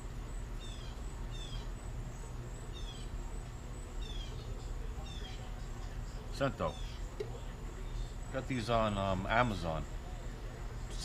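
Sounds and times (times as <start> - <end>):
songbird chirping: 0.3 - 8.2.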